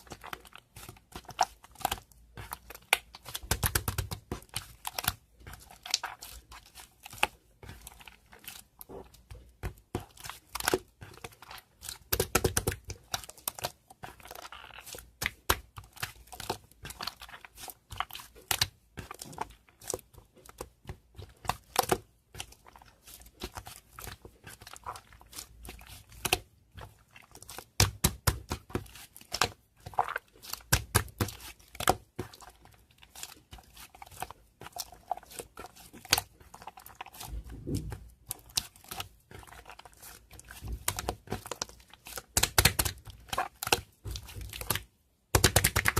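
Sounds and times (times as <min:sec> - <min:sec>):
crinkling and rustling: 0:00.0 - 0:45.9
clicks and taps: 0:43.6 - 0:45.9.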